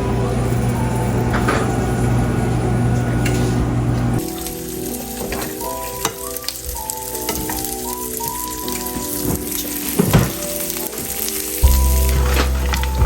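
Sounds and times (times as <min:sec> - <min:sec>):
crackling sizzling noise: 0:00.0 - 0:13.0
background music melody: 0:04.2 - 0:13.0.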